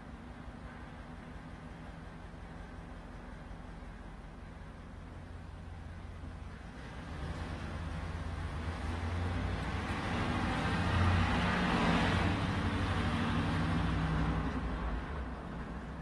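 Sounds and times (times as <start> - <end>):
vehicle passing by: 6.8 - 15.5.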